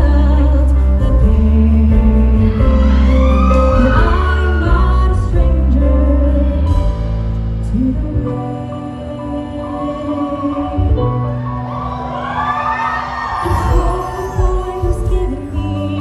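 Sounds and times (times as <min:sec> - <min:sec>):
band with heavy bass: 0:00.0 - 0:08.4
woman singing: 0:00.0 - 0:11.4, 0:12.6 - 0:16.0.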